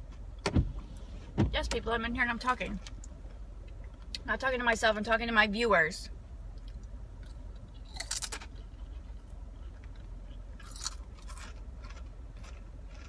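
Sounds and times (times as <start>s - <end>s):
person chewing crunchy food: 6.6s - 13.0s.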